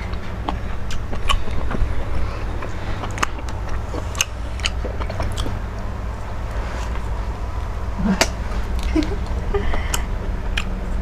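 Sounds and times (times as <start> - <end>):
wet mouth clicks: 0.0 - 5.9, 8.0 - 10.8
person chewing food: 0.0 - 11.0
steady low hum: 0.0 - 11.0.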